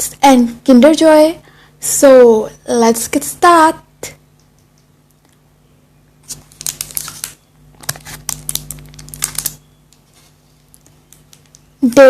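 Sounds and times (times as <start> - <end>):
wrapper crinkling: 6.2 - 11.8.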